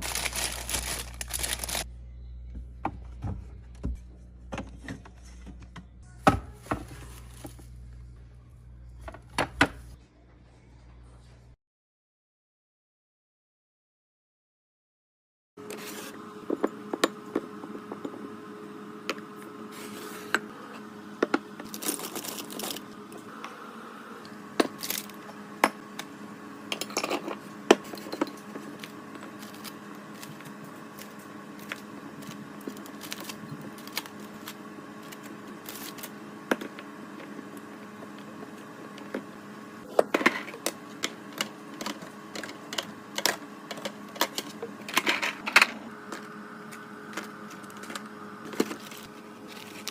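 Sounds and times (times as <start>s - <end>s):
plastic and glass items clattering: 0.0s - 1.8s, 21.7s - 22.8s, 26.7s - 30.4s
refrigerator hum: 0.0s - 11.6s, 15.6s - 49.9s.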